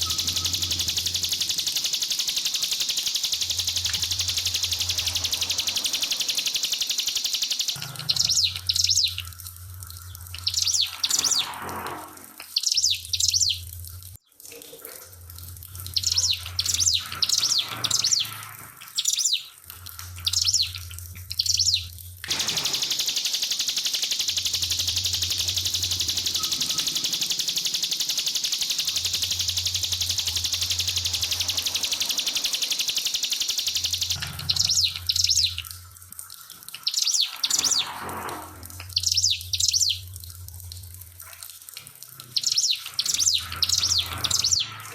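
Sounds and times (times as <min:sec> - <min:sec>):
bird singing rapid high notes: 0:00.0 - 0:09.3, 0:10.3 - 0:11.6, 0:12.5 - 0:13.7, 0:15.9 - 0:19.6, 0:20.2 - 0:35.7, 0:36.8 - 0:38.0, 0:38.9 - 0:40.1, 0:42.3 - 0:44.8
trickling water: 0:00.0 - 0:44.9.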